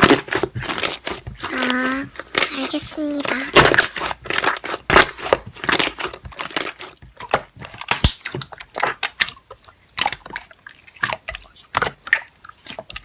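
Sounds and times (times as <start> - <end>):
slime squishing and popping: 0.0 - 13.0.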